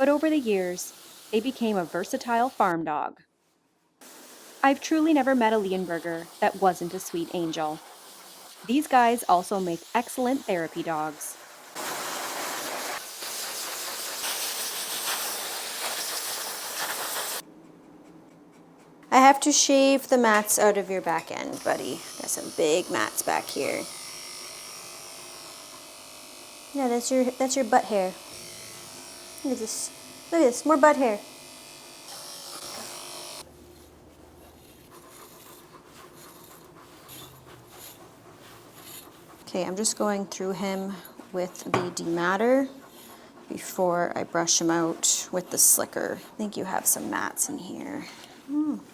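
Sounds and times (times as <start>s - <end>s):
comb rasping through fur: 0.0s - 2.7s, 4.0s - 17.4s, 19.0s - 48.9s
pet dryer blowing air: 0.0s - 2.7s, 4.0s - 17.4s, 21.5s - 33.5s, 38.9s - 42.4s
electric clippers running: 21.5s - 33.5s.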